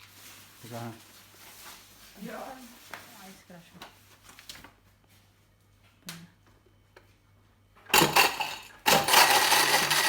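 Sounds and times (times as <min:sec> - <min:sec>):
ice rattling in blender jar: 0:07.9 - 0:10.0
blender running: 0:08.0 - 0:10.0.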